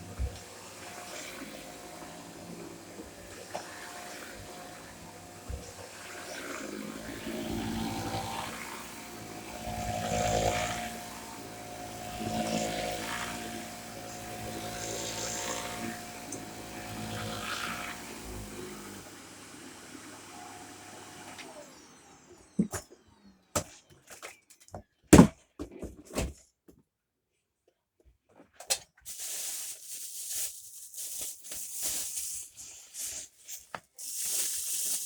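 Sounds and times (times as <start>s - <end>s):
vacuum cleaner motor whine: 0.0s - 23.6s, 34.0s - 35.0s.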